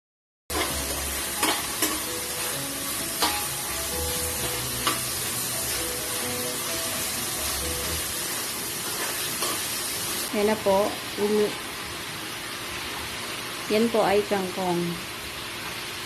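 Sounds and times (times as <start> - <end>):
utensil striking pan: 0.5 - 7.0
food sizzling in a pan: 0.5 - 16.0.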